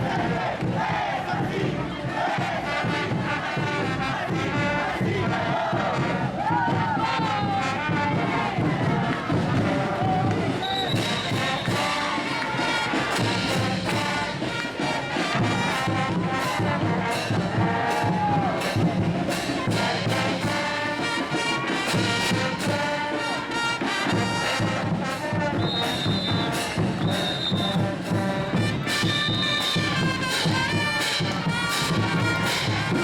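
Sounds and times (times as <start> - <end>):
steady drum beat: 0.0 - 33.0
brass horns playing a melody: 10.6 - 33.0.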